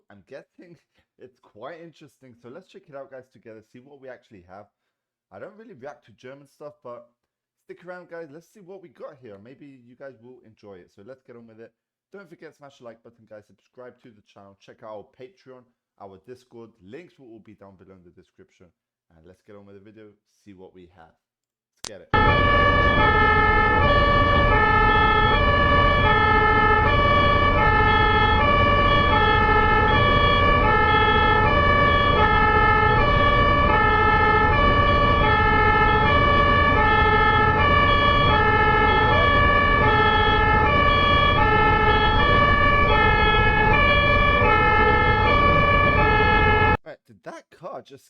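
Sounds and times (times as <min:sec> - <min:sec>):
two-tone ambulance siren: 0:22.2 - 0:46.8.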